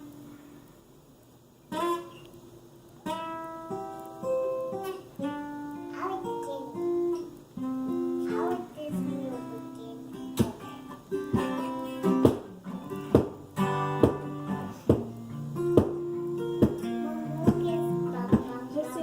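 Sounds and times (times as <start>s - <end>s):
acoustic guitar strumming chords: 1.7s - 19.0s.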